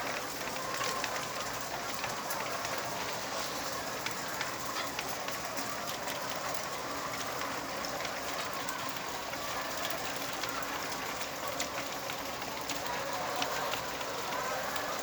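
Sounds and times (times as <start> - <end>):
flock of hens: 0.0 - 15.0.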